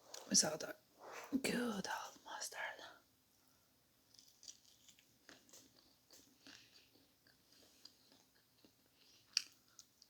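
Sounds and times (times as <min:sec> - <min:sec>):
person chewing: 0:04.1 - 0:10.0.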